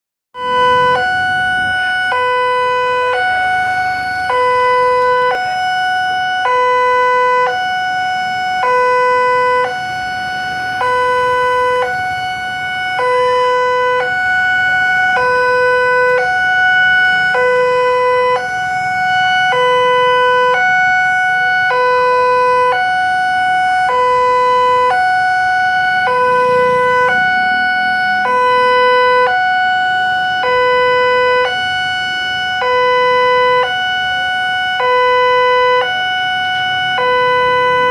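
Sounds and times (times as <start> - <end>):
two-tone electronic siren: 0.3 - 37.9.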